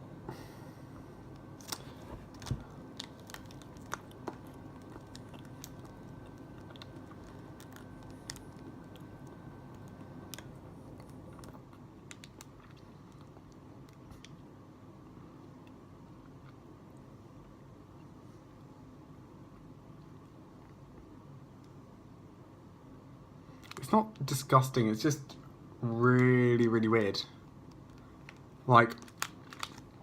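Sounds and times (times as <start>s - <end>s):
low steady hum: 0.0s - 30.0s
quiet chewing: 1.3s - 18.7s, 19.4s - 21.8s
crackles of biting into food: 1.6s - 14.4s.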